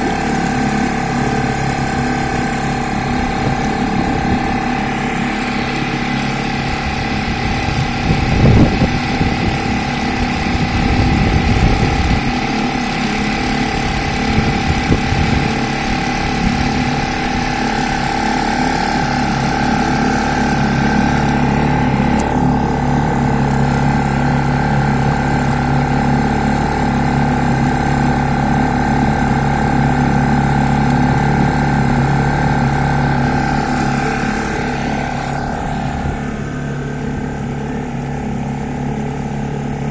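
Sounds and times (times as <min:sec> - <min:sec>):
outboard motor running: 0:00.0 - 0:39.9.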